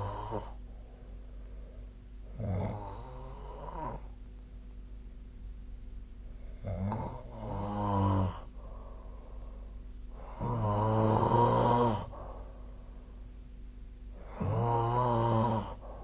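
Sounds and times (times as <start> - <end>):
person snoring: 0.0 - 0.6, 2.2 - 4.2, 6.4 - 9.2, 10.1 - 12.6, 14.1 - 16.0
low steady hum: 0.0 - 16.0.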